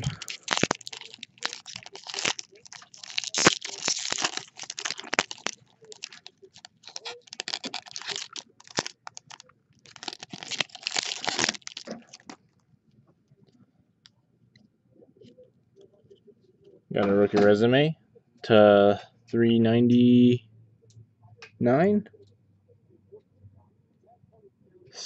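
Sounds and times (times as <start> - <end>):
card pack wrappers crinkling: 0.0 - 12.4.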